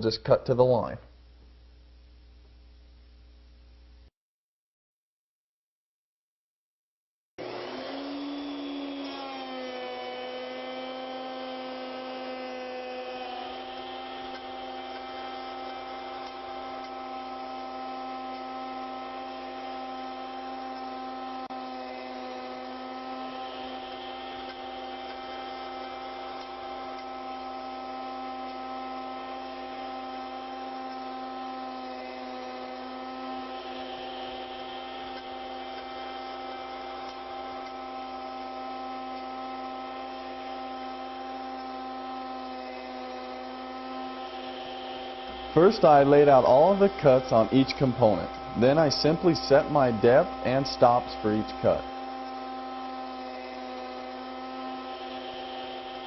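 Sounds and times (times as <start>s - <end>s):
router motor humming: 7.4s - 56.0s.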